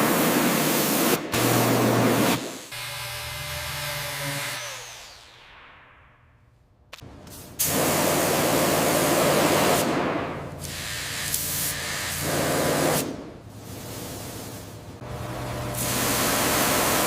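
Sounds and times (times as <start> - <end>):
hissing spray: 10.6 - 14.7, 15.8 - 17.0.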